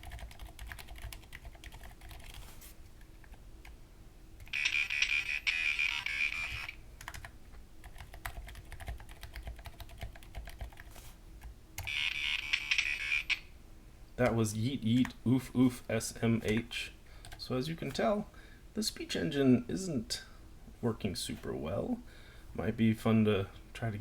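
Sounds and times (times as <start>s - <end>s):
mechanical keyboard typing: 0.0s - 2.4s, 4.4s - 11.0s
buzzy text-to-speech voice: 4.6s - 6.7s, 12.0s - 13.4s.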